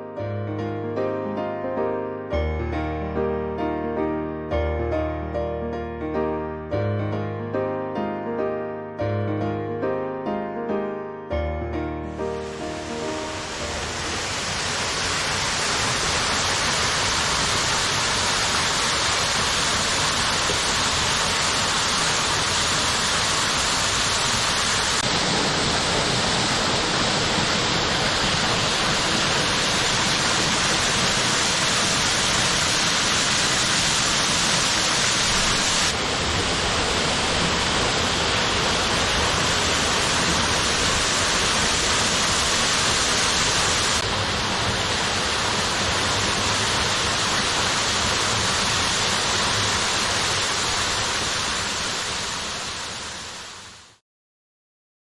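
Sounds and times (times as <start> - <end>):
waterfall pouring over rock: 12.2 - 54.0.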